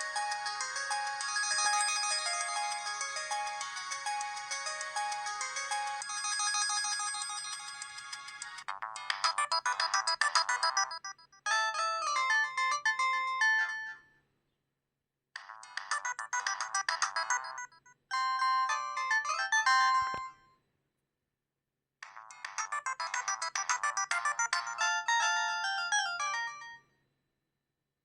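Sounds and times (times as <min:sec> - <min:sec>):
polyphonic ringtone melody: 0:00.0 - 0:08.6, 0:09.2 - 0:14.0, 0:15.8 - 0:20.2, 0:22.2 - 0:26.8.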